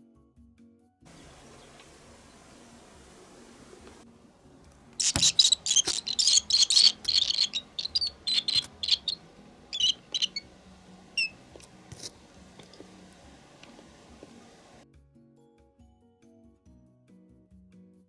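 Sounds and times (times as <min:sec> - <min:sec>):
nestlings chirping rapidly: 0:01.1 - 0:04.0, 0:04.9 - 0:14.8.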